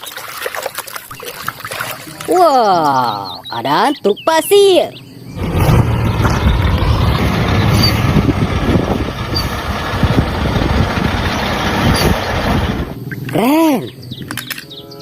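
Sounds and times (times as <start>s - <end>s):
truck engine rumbling: 5.3s - 13.4s.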